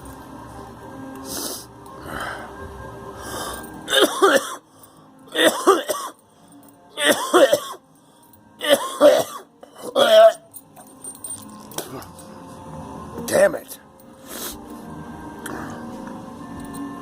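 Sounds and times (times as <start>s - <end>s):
person coughing: 3.9s - 4.6s, 5.3s - 6.2s, 7.0s - 7.8s, 8.6s - 10.5s.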